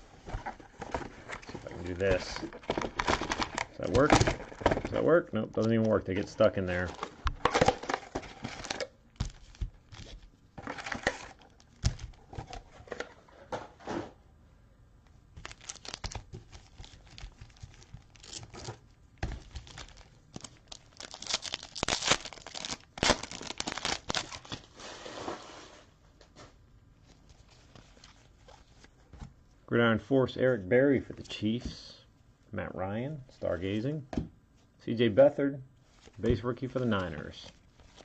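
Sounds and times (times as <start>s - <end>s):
wrappers tearing and crinkling: 1.3s - 5.7s, 6.7s - 12.6s, 15.4s - 24.9s.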